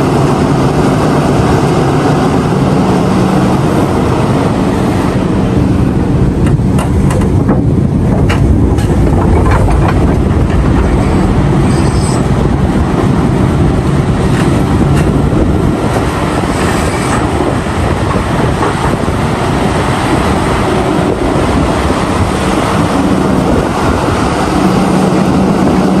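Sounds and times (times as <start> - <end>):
excavator engine rumble: 0.0 - 26.0
knocks and clatter: 6.4 - 12.4, 17.9 - 19.2.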